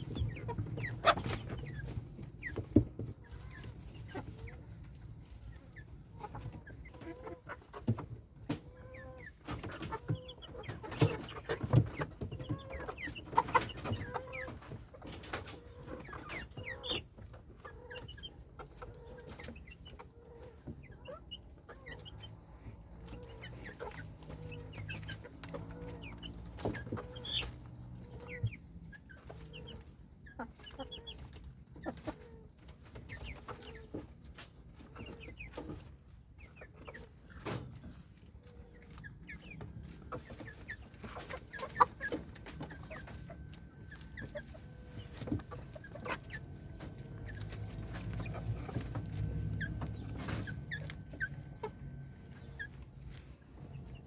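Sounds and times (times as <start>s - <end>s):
chickens clucking: 0.0s - 54.0s.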